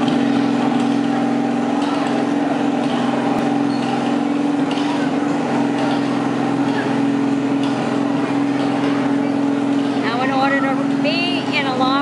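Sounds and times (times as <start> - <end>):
riding lawn mower engine: 0.0 - 12.0.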